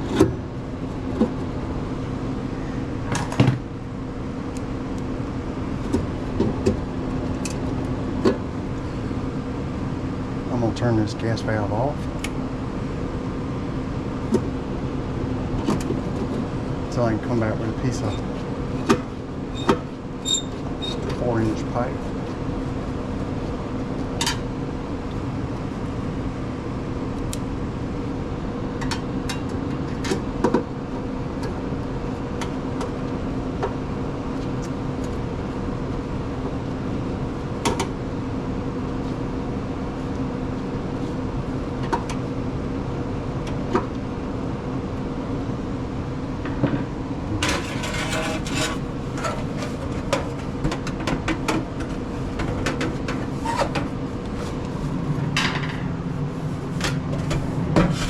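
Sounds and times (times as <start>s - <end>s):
central air system hum: 0.0s - 58.0s.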